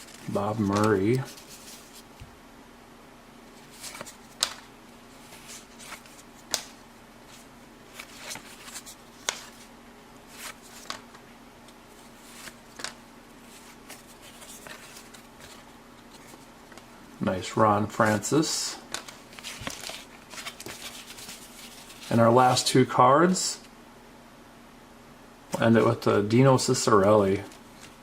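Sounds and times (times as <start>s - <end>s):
cardboard cards rustling: 0.0s - 2.3s, 3.6s - 11.2s, 11.9s - 16.9s, 18.9s - 22.2s.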